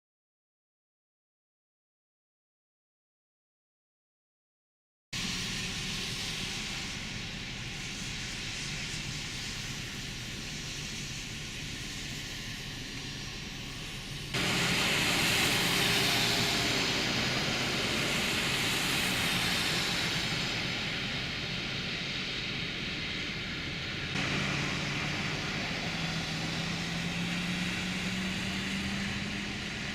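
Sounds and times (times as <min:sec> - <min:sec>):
vehicle road and engine noise: 0:05.2 - 0:29.9.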